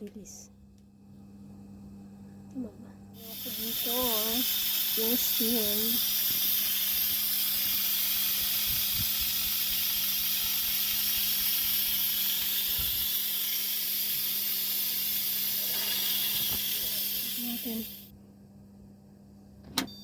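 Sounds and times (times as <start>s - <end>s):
pressure cooker venting steam: 3.2s - 18.1s.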